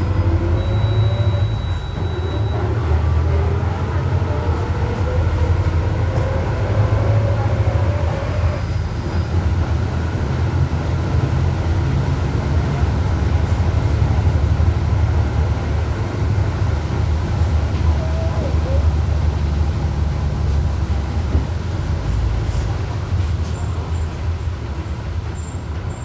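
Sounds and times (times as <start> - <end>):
gearbox whine: 0.0 - 3.3
diesel engine drone: 0.0 - 23.2.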